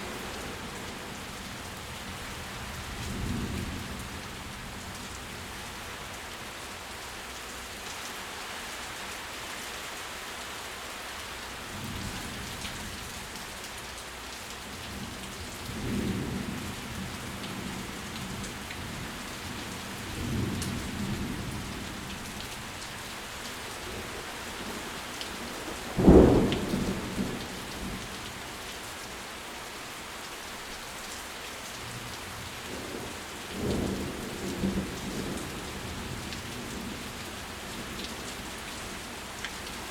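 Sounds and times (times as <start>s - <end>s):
steady rain falling: 0.0s - 39.9s
low rolls of thunder: 25.6s - 28.1s, 32.7s - 37.0s.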